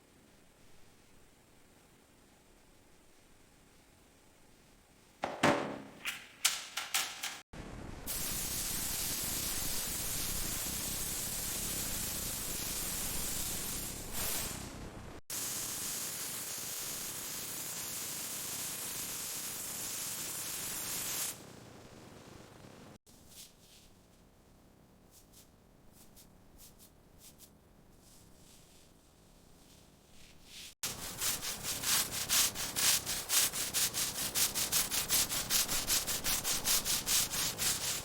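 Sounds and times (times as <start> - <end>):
sharp knocks: 5.2 - 7.4
compressed air spraying hiss: 8.1 - 14.7, 15.3 - 21.4.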